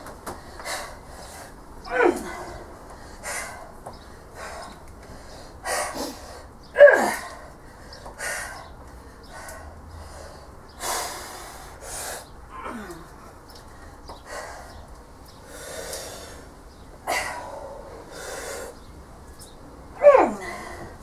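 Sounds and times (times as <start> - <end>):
woman grunting with effort: 1.9 - 2.6, 6.8 - 7.4, 12.5 - 13.1, 20.0 - 20.9.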